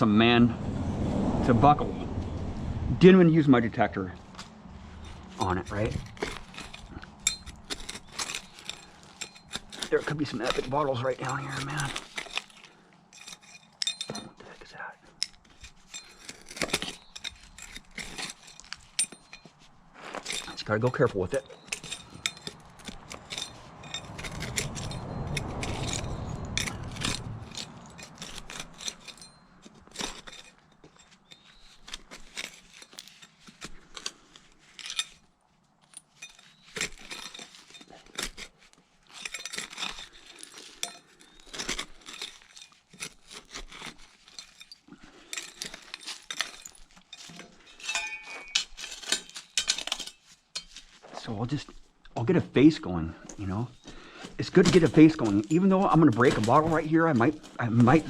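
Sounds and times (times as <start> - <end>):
low rumbling noise: 0.0 - 7.3
digging tool scraping soil: 3.0 - 58.0
tool clinking against glass: 5.0 - 34.1, 34.7 - 52.2, 53.2 - 58.0.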